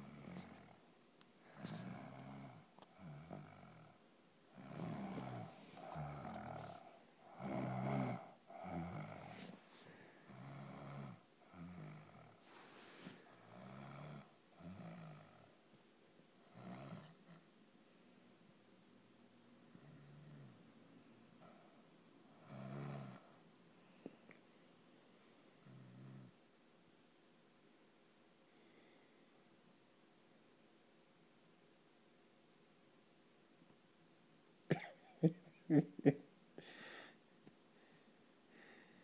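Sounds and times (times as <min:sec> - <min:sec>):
loud rasping snoring: 0:04.6 - 0:09.4, 0:10.3 - 0:12.4, 0:13.4 - 0:15.4, 0:16.5 - 0:17.1, 0:22.4 - 0:23.2.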